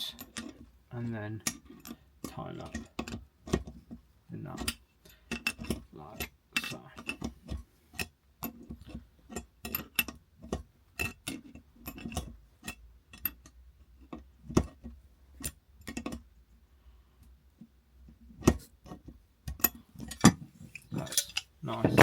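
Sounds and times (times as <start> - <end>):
metal tools clicking and clinking: 19.6 - 22.0.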